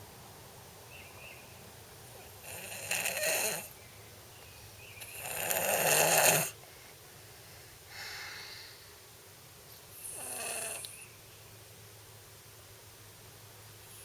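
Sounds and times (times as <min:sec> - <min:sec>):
person snoring: 0:02.4 - 0:03.7, 0:05.1 - 0:06.5, 0:10.0 - 0:10.9.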